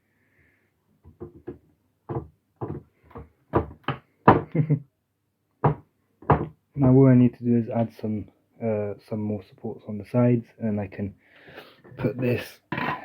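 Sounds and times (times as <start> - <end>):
knocks on wooden table: 1.1 - 4.5, 5.6 - 6.6.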